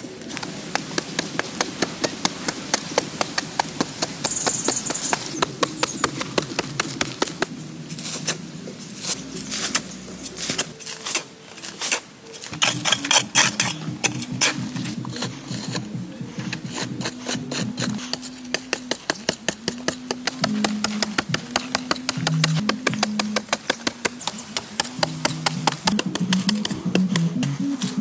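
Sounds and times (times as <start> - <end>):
fast clicking beat: 19.8 - 28.0.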